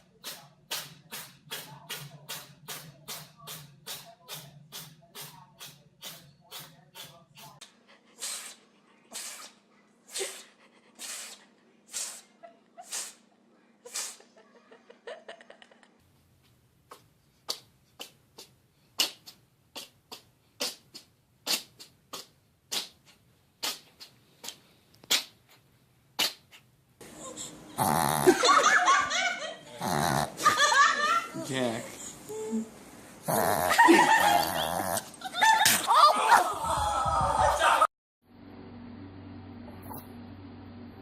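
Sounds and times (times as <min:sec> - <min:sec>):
pet sneezing: 0:08.2 - 0:13.3, 0:13.9 - 0:14.3, 0:16.9 - 0:25.6, 0:26.2 - 0:26.7
people laughing: 0:14.2 - 0:16.0, 0:28.2 - 0:31.5, 0:33.7 - 0:37.9.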